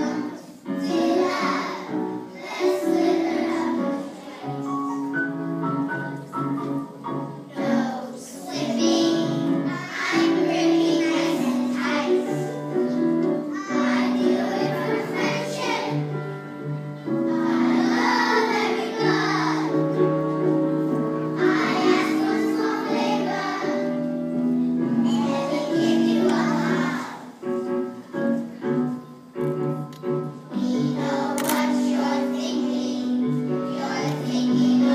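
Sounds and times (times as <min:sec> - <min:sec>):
children singing in unison: 0:00.0 - 0:05.0, 0:07.5 - 0:16.4, 0:17.1 - 0:20.0, 0:21.4 - 0:24.1, 0:25.0 - 0:27.4, 0:30.5 - 0:34.9
instrumental accompaniment: 0:00.0 - 0:34.9.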